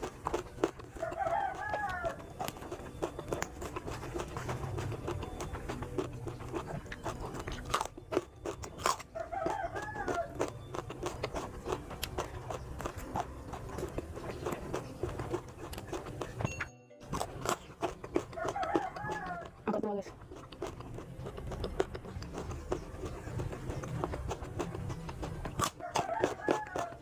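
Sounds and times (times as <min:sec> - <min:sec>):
chicken calling: 0:01.0 - 0:02.3, 0:09.1 - 0:10.5.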